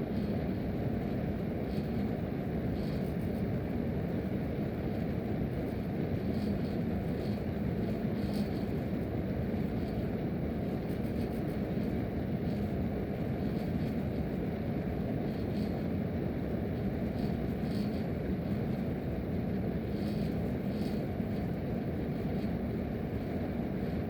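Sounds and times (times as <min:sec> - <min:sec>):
air rushing from a vent: 0:00.0 - 0:24.0.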